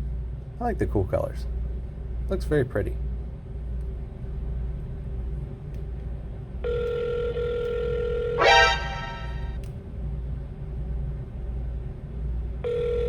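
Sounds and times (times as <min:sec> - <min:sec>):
phone call tone: 0:06.7 - 0:09.5, 0:12.7 - 0:13.0
loud tone with overtones: 0:08.4 - 0:09.6.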